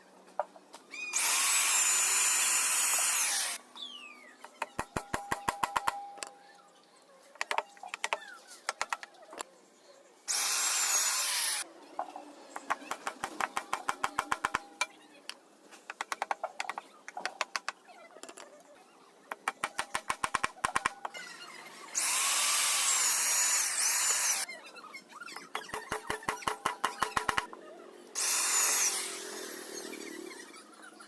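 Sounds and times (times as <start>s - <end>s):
power drill running: 1.2s - 3.6s, 10.3s - 11.6s, 22.0s - 24.4s, 28.2s - 29.8s.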